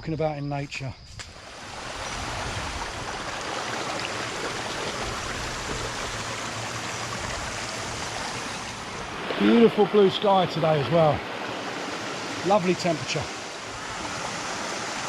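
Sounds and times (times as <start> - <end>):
waterfall water rushing: 1.5 - 15.0.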